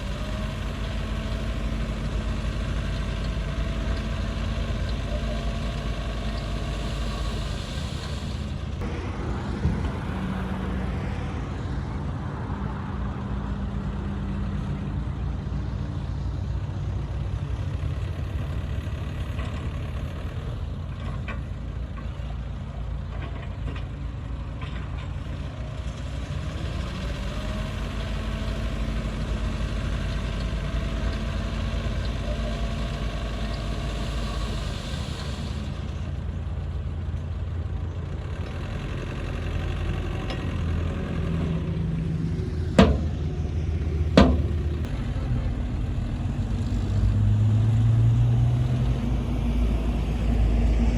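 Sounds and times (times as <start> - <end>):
bulldozer diesel engine running: 0.0 - 50.9
sharp knock: 44.2 - 44.5.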